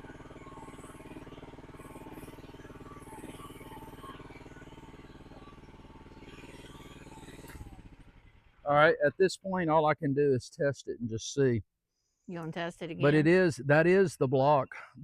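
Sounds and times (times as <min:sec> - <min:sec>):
excavator engine idling: 0:00.0 - 0:09.7, 0:12.9 - 0:14.0.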